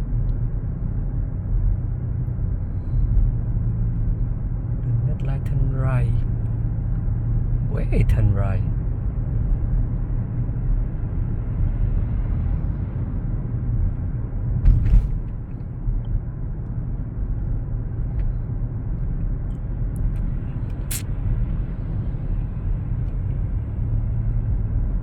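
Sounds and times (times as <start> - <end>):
car driving rumble in cabin: 0.0 - 25.0
sharp click: 20.7 - 21.0.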